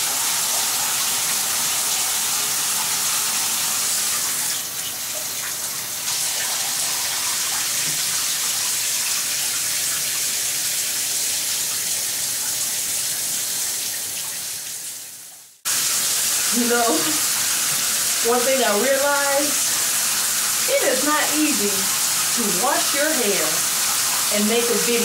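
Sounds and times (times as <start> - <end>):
shower head spraying water: 0.0 - 4.6, 15.7 - 25.0.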